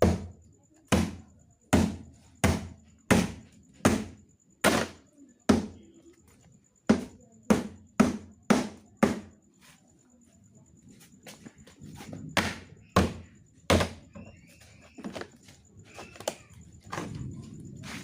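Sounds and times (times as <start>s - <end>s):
heavy blows on refrigerator casing: 0.0s - 6.0s, 6.8s - 9.5s, 11.3s - 14.9s.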